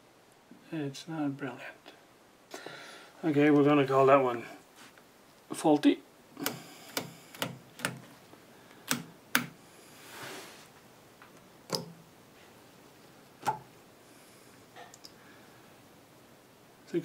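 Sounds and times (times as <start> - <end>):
soft rustle: 3.4 - 5.4, 9.8 - 10.9.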